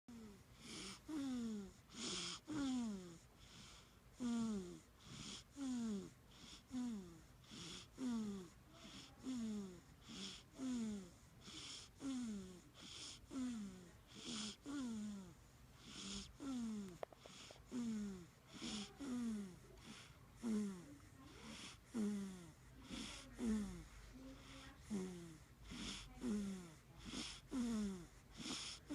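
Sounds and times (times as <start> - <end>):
baby snoring: 0.1 - 28.9.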